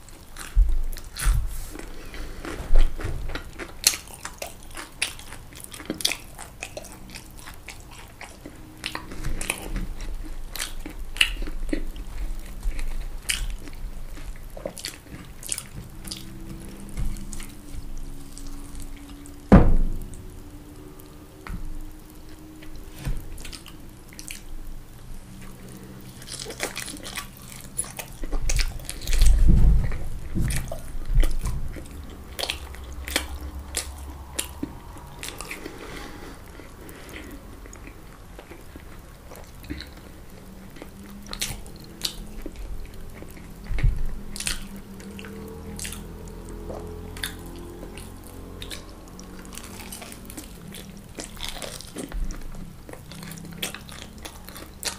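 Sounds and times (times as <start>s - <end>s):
wet sticky chewing: 0.0s - 54.9s
sharp thump: 19.5s - 20.2s.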